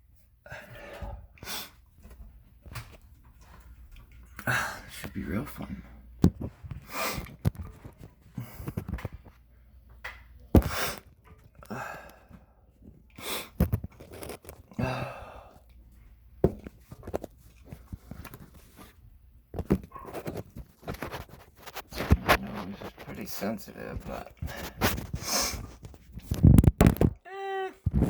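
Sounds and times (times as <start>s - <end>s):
heavy breathing: 11.6s - 13.6s, 14.7s - 15.7s
knocks and thumps: 16.4s - 17.3s.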